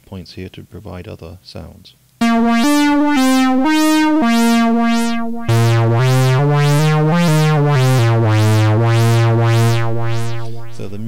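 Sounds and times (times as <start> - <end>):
pulsing synthesizer bass notes: 2.2 - 11.0.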